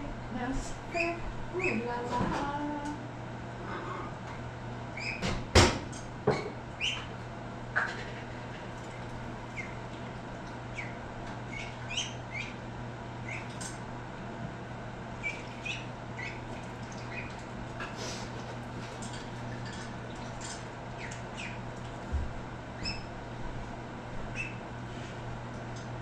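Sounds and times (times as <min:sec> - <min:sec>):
steady low hum: 0:00.0 - 0:26.0
birds chirping: 0:05.0 - 0:05.2, 0:06.8 - 0:07.1, 0:09.5 - 0:09.8, 0:10.7 - 0:13.6, 0:15.2 - 0:17.4, 0:20.9 - 0:21.7, 0:24.3 - 0:24.6.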